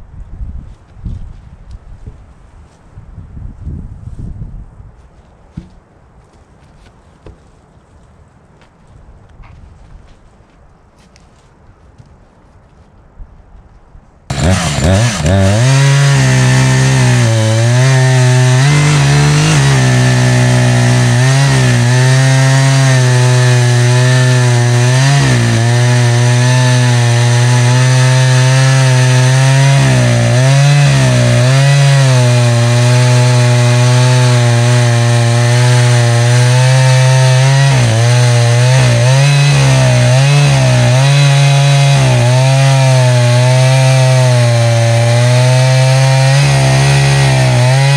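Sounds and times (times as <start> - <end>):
chainsaw cutting log at full throttle: 14.3 - 47.9.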